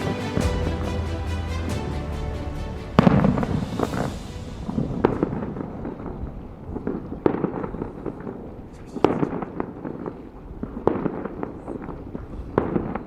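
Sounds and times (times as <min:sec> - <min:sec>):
show music: 0:00.0 - 0:06.8
fireworks bangs: 0:00.0 - 0:13.0.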